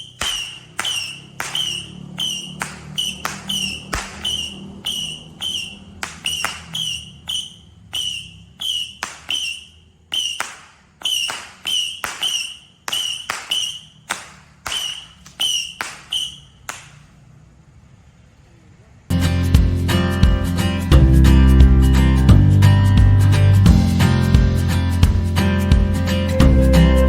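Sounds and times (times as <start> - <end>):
firework pops with whistles: 0.0 - 17.1.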